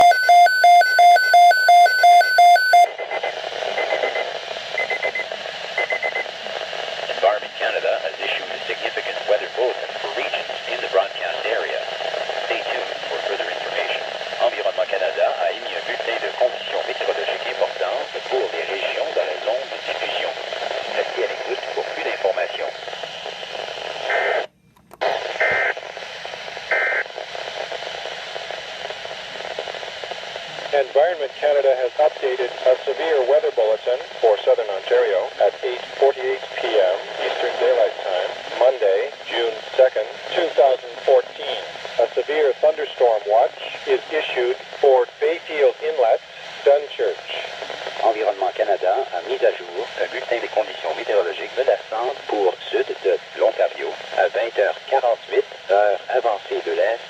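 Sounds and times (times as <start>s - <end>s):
rapid electronic beeping: 0.0s - 4.2s
radio hiss: 0.8s - 57.0s.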